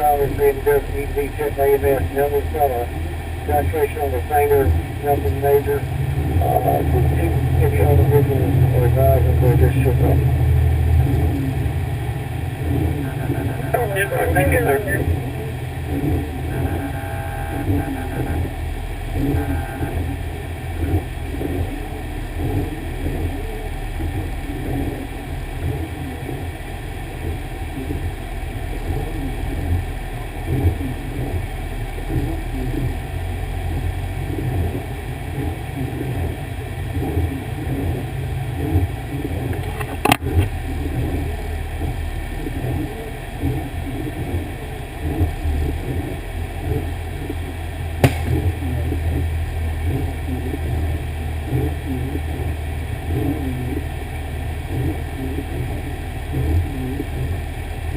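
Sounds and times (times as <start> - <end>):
diesel engine rumbling: 0.0 - 57.9
sharp click: 48.0 - 48.5.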